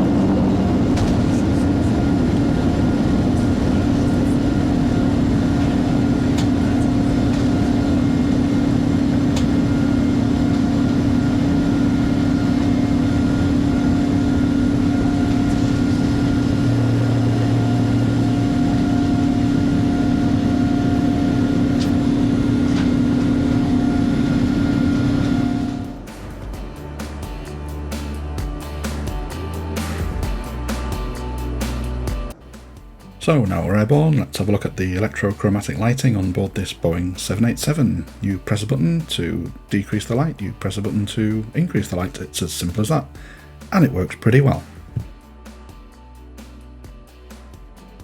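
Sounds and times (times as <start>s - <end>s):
jet engines roaring in cabin: 0.0s - 26.6s.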